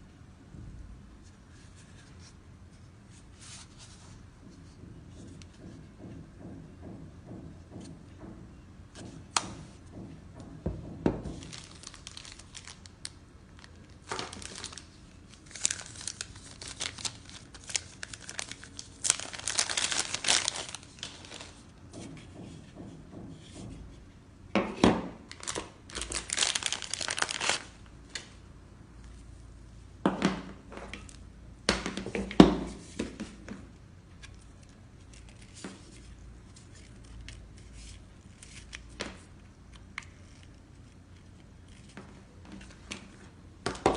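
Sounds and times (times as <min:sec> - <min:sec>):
plastic wrapping crinkling and tearing: 0:11.3 - 0:21.6, 0:25.3 - 0:28.3.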